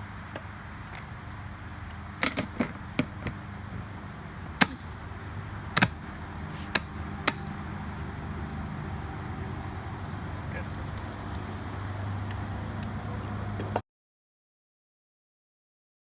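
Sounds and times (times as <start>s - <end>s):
sharp clicks and knocks: 5.8s - 7.5s.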